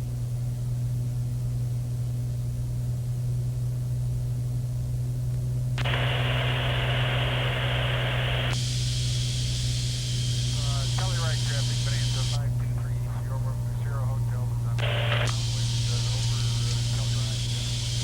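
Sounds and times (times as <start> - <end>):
radio static hiss: 5.8 - 18.0
aircraft engine and propeller droning: 5.9 - 18.0.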